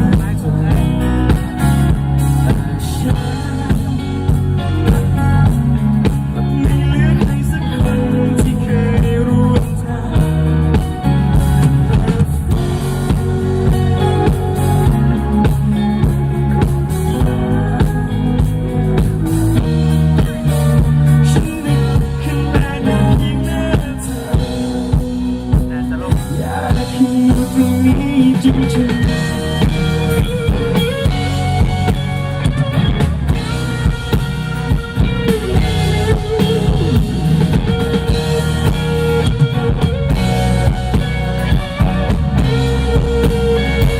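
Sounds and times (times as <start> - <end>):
bass: 0.0 - 43.9
drum kit: 0.0 - 43.9
guitar: 0.0 - 43.9.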